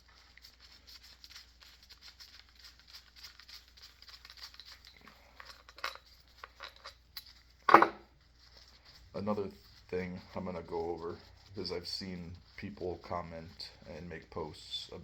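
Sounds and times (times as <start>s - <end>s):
small parts clicking and rustling: 0.0s - 9.9s.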